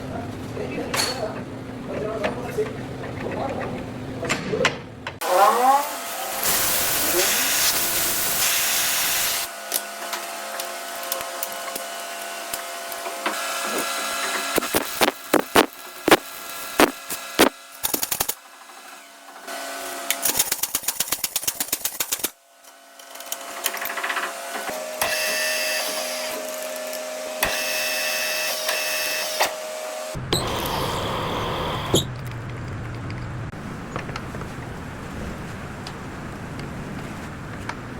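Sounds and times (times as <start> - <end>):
metalworking machine running: 30.2 - 33.2.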